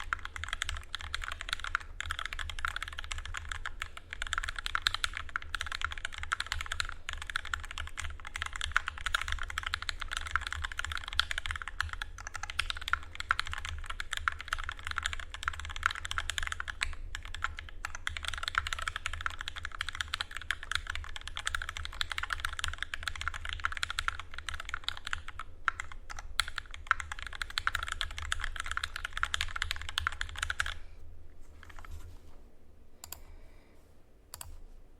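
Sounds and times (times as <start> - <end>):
fast typing on mechanical keyboard: 0.0 - 30.8
steady low hum: 14.6 - 34.9.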